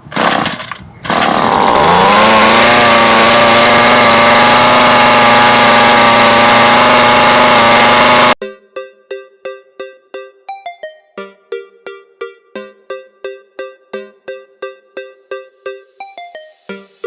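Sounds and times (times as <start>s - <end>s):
short rattling bursts: 0.0s - 8.4s
string trimmer engine running: 0.0s - 8.4s.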